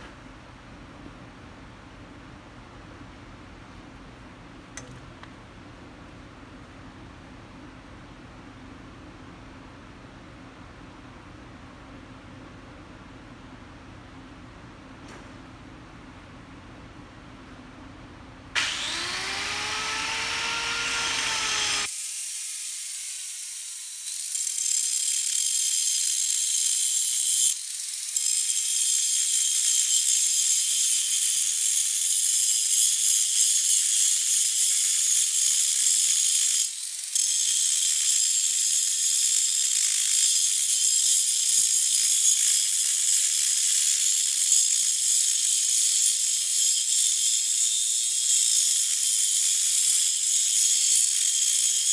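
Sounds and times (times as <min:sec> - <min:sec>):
grinder grinding steel: 0:18.6 - 0:51.9.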